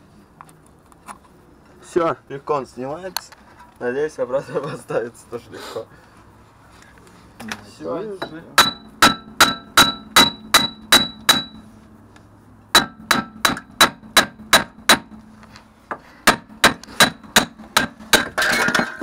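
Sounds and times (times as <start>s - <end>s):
hammer striking metal: 8.2s - 11.7s, 12.7s - 15.2s, 16.2s - 19.0s.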